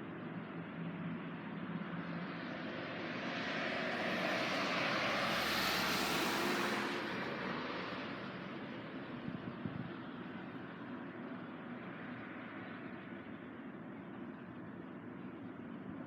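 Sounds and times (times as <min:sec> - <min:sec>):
vehicle passing by: 0:02.6 - 0:08.8.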